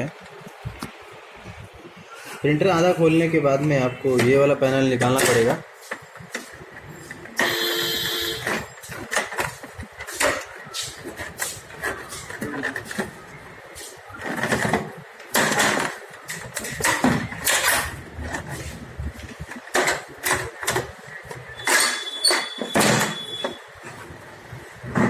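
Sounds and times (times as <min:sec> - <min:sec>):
plastic parts scraping and clacking: 0:08.3 - 0:13.2, 0:14.2 - 0:24.2.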